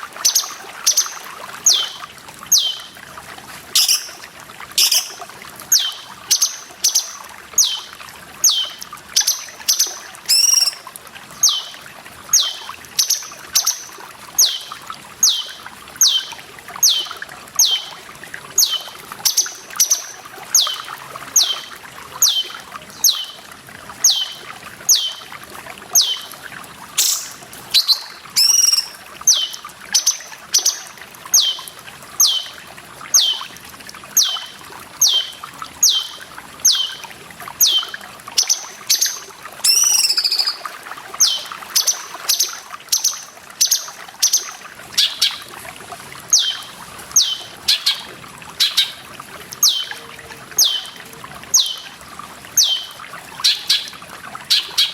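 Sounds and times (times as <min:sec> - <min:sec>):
water trickling and pouring: 0:00.0 - 0:54.9
bird whistling call: 0:01.7 - 0:02.9, 0:03.8 - 0:04.2, 0:04.8 - 0:10.8, 0:11.4 - 0:11.7, 0:14.4 - 0:17.9, 0:21.4 - 0:23.4, 0:24.1 - 0:25.2, 0:27.0 - 0:30.7, 0:34.2 - 0:37.0, 0:37.6 - 0:40.6, 0:49.6 - 0:50.9, 0:52.6 - 0:53.9.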